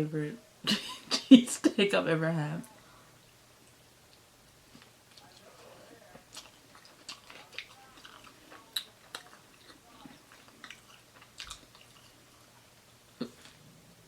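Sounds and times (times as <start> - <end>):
chewing and mouth smacks: 3.6 - 13.6.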